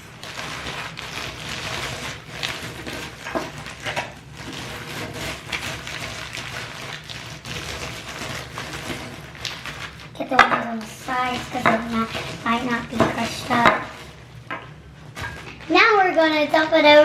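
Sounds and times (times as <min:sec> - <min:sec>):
cereal crunching in plastic bag: 0:00.0 - 0:14.3.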